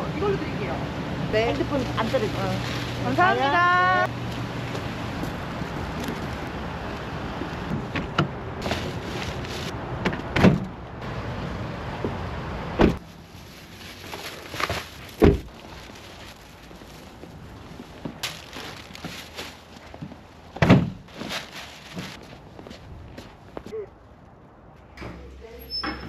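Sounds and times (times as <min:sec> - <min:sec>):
door shutting with a thud: 0:20.6 - 0:21.0.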